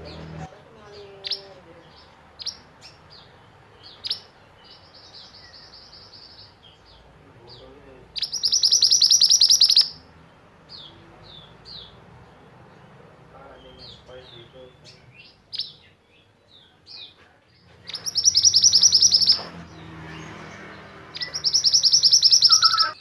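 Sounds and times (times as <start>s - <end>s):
small songbirds chirping: 0.0s - 23.0s
bird rapid-fire trill: 8.2s - 10.0s, 17.8s - 19.5s, 21.1s - 23.0s.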